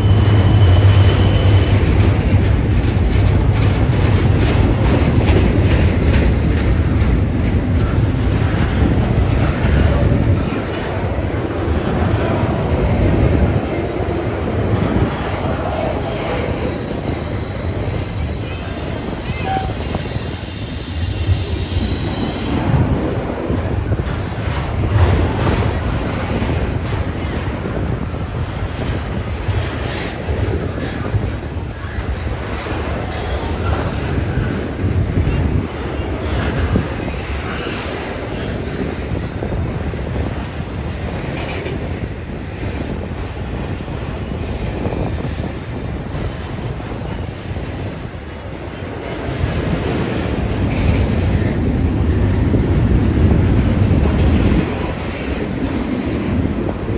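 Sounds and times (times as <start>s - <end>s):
high wheel squeals: 0.0s - 2.1s, 16.2s - 22.6s, 28.3s - 34.5s
train clicks and clatter: 0.0s - 56.9s
train wheels rumbling on rail: 0.0s - 56.9s.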